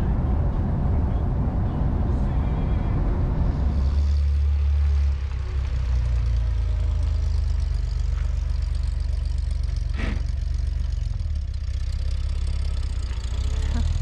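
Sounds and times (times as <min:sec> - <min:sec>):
van engine running: 0:00.0 - 0:14.0.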